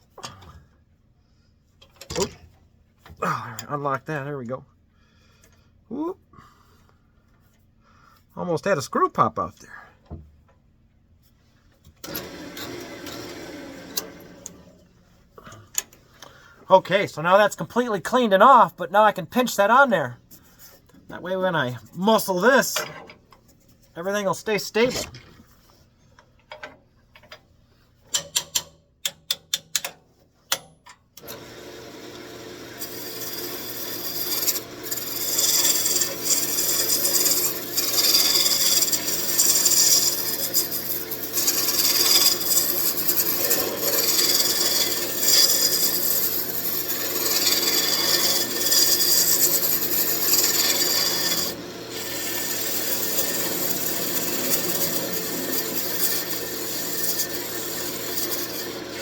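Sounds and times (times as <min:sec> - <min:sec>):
turning tool scraping wood: 0:23.5 - 0:25.9, 0:32.8 - 0:59.0
lathe motor humming: 0:31.3 - 0:59.0.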